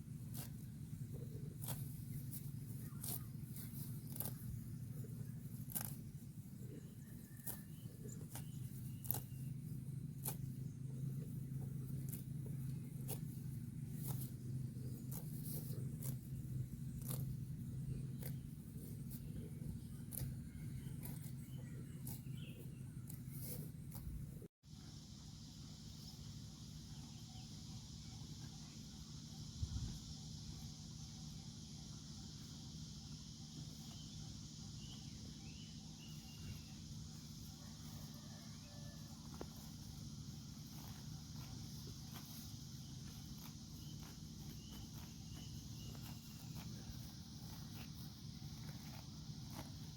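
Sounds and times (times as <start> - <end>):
cow tearing grass: 0.0 - 24.5, 30.5 - 49.9
insects chirring: 0.0 - 49.9
steady low hum: 0.0 - 49.9
faint bird chirps: 25.8 - 49.9.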